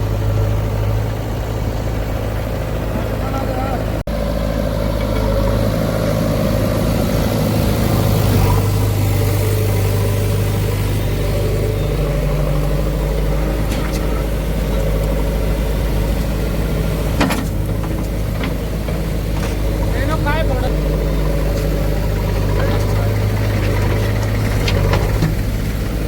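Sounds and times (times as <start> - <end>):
heavy diesel engine running: 0.0 - 26.0.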